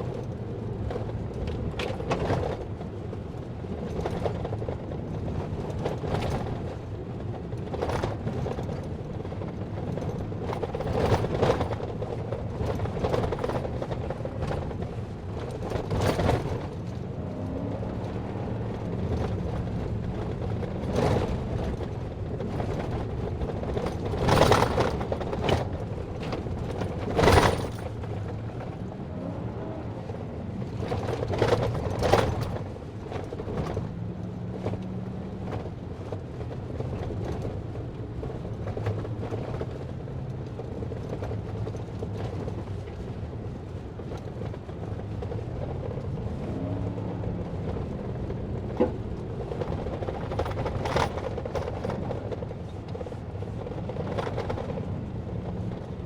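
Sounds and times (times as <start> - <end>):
vehicle engine running: 0.0 - 56.0
knocks and rattles: 7.7 - 29.0, 30.6 - 42.9, 47.5 - 56.0.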